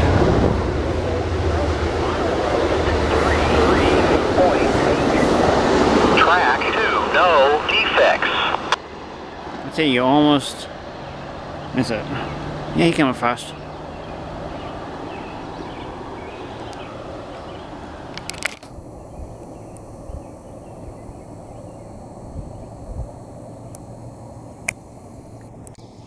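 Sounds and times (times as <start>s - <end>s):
train wheels rumbling on rail: 0.0s - 26.0s
faint low rumble with ticks: 16.6s - 26.0s.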